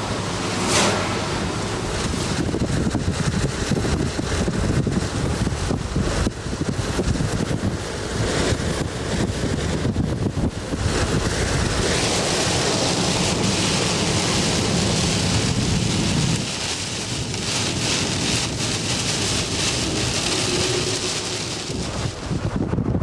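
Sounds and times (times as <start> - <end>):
rain hissing: 0.0 - 23.0
wind rumbling on microphone: 0.0 - 23.0.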